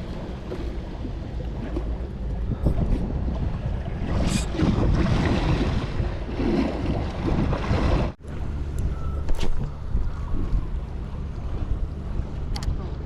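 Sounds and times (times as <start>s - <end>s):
sea water washing at shore: 0.0s - 8.2s
wind buffeting microphone: 0.0s - 8.2s, 8.8s - 13.0s.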